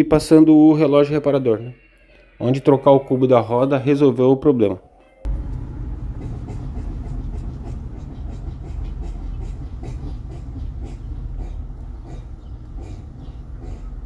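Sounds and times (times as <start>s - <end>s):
car driving low rumble: 5.3s - 14.0s.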